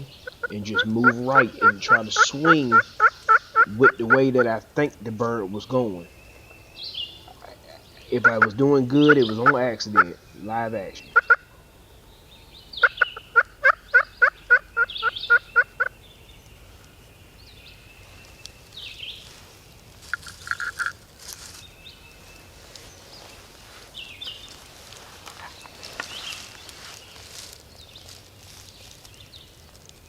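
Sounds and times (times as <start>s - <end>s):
songbird chirps: 0.0s - 30.0s
turkey yelps: 0.2s - 4.5s, 11.1s - 11.5s, 12.8s - 15.9s
rustling: 18.0s - 30.0s.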